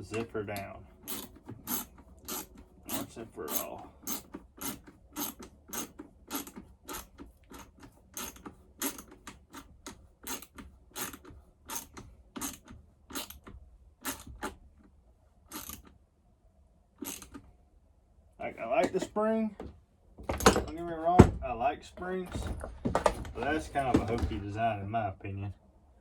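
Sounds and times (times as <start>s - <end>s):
ratchet wrench clicking: 1.0s - 13.4s, 14.0s - 14.5s, 15.5s - 15.9s, 17.0s - 17.4s.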